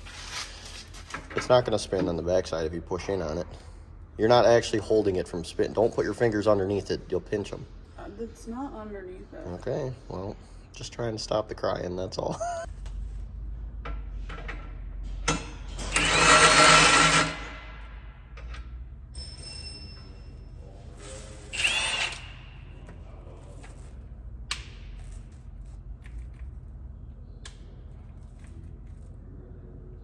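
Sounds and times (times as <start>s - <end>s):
power tool whining: 15.7s - 17.7s, 21.4s - 22.5s.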